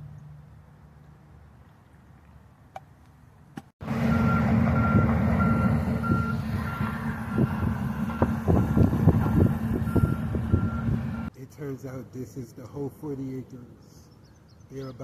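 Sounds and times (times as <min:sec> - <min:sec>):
engine running: 0:03.8 - 0:11.3
vehicle reversing alarm beeps: 0:04.1 - 0:11.3.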